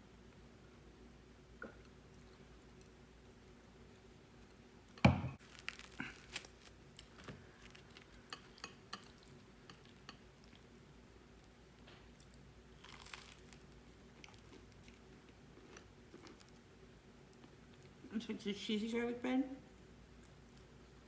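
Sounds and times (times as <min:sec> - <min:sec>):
crunchy bread chewing: 0:05.4 - 0:18.0.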